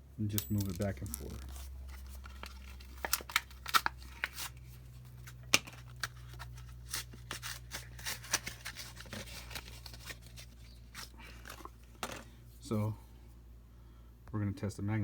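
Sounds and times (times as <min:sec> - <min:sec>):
small objects clicking and scraping: 0:00.3 - 0:04.4.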